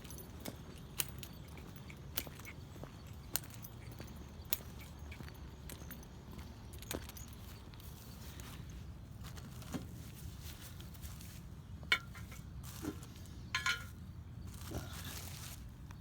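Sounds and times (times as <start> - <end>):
light metallic clinks: 0.0 - 8.0, 13.5 - 14.0.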